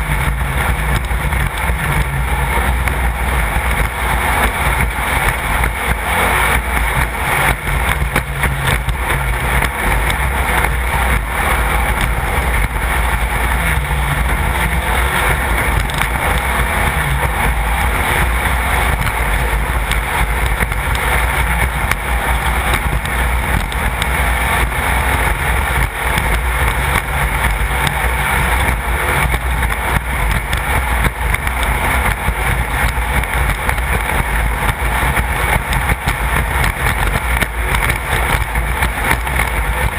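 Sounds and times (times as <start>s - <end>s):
race car engine running: 0.0s - 39.9s.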